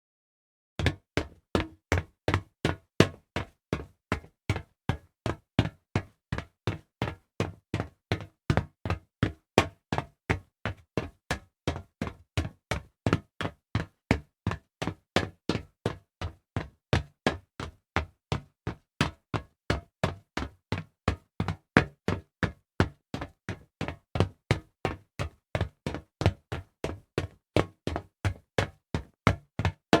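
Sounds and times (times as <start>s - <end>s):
fast footsteps on hollow metal: 28.7s - 30.0s.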